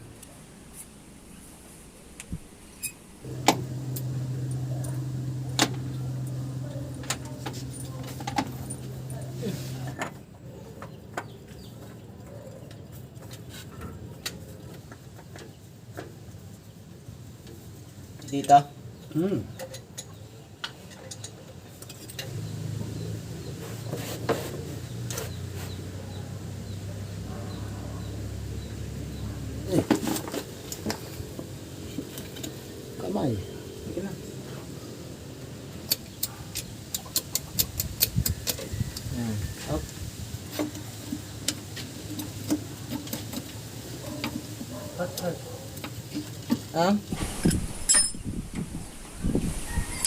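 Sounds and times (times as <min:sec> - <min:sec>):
low machine hum: 0:00.0 - 0:10.4
sharp metal clinks: 0:47.7 - 0:48.3.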